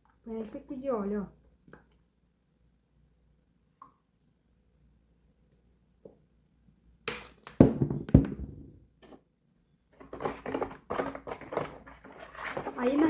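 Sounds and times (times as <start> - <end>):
containers thunking: 7.5 - 8.8.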